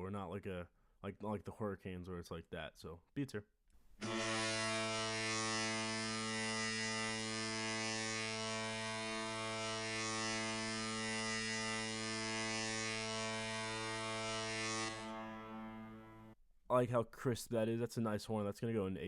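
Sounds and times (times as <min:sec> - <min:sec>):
arena goal horn blast: 0:04.0 - 0:16.4.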